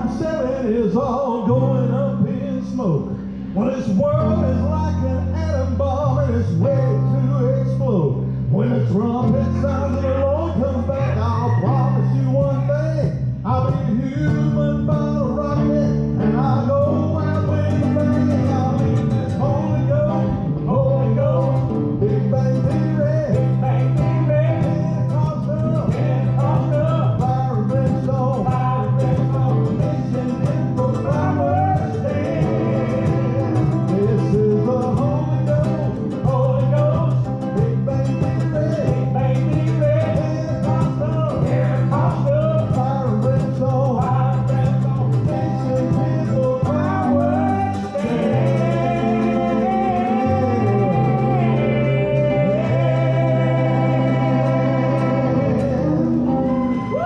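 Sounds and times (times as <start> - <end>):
mandolin: 0.0 - 57.0
plucked string instruments: 0.0 - 57.0
steady bass line: 0.0 - 57.0.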